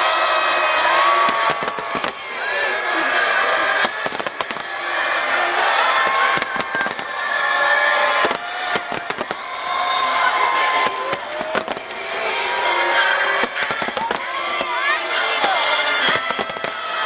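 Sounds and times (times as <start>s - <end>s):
fireworks bangs and crackles: 1.0s - 17.0s
music playing: 5.2s - 15.0s.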